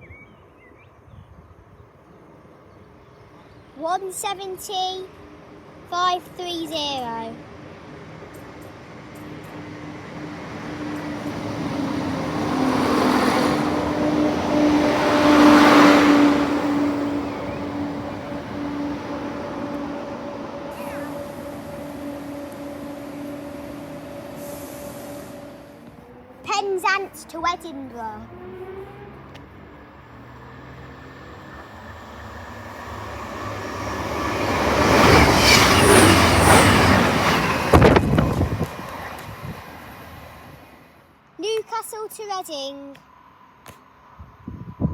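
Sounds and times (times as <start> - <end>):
diesel train passing: 0.4 - 44.9
sharp train clacks: 3.8 - 28.4, 30.3 - 40.8.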